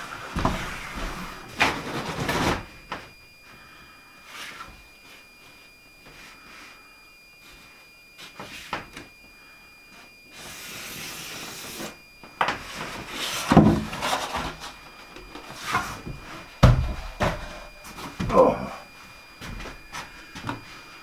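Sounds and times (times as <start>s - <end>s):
wood sliding scrape: 0.0s - 2.7s, 12.6s - 14.8s, 15.4s - 18.1s
heavy thumps of wood: 13.5s - 14.6s, 15.7s - 18.6s.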